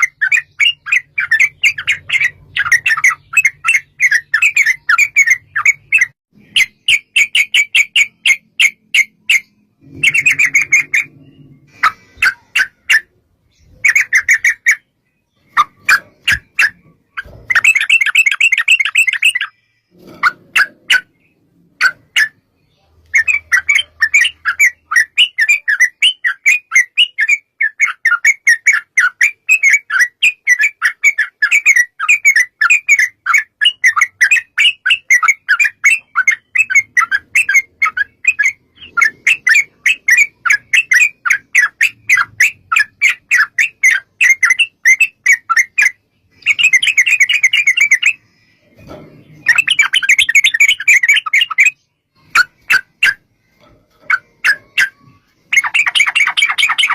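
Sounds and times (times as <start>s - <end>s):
bird singing chattering notes: 0.0s - 56.9s.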